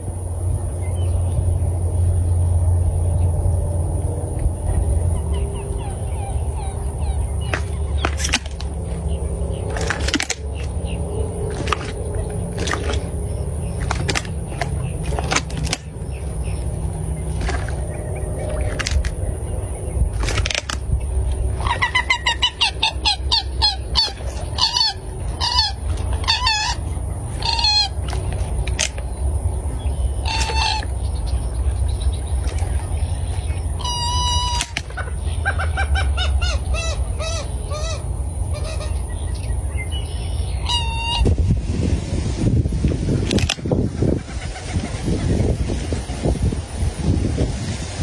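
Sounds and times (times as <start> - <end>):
steady low rumble: 0.0 - 48.0
bird calling: 5.1 - 41.4.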